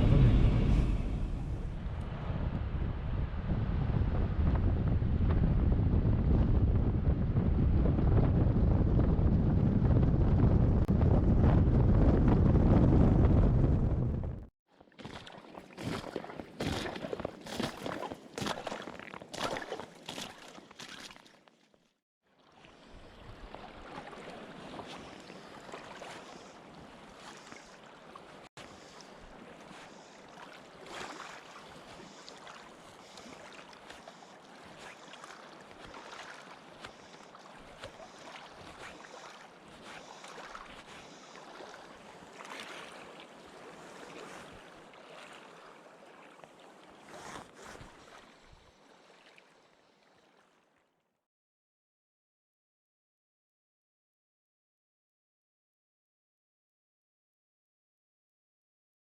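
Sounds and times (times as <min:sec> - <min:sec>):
river flowing: 0:00.0 - 0:02.1
wind on microphone: 0:00.0 - 0:14.5.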